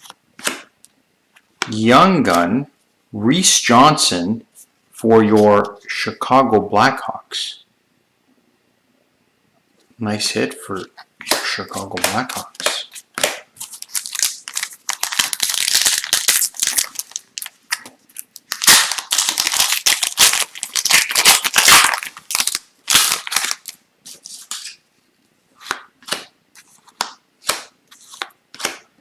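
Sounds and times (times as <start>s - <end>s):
cards flipping clicks: 11.2s - 15.4s, 26.9s - 28.9s
wrapper crinkling and tearing: 11.5s - 24.8s.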